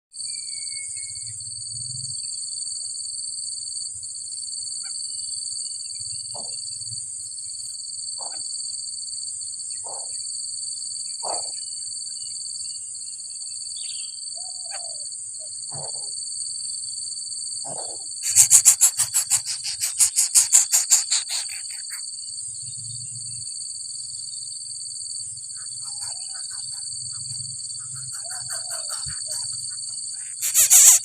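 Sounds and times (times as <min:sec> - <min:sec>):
animal calls: 0:17.7 - 0:22.0, 0:25.6 - 0:31.0
insects shrilling: 0:17.7 - 0:22.2, 0:25.4 - 0:31.0.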